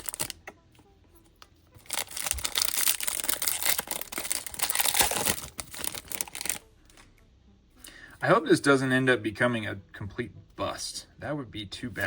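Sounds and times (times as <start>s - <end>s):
foil wrapper tearing and crinkling: 0.0s - 0.4s, 1.8s - 6.6s.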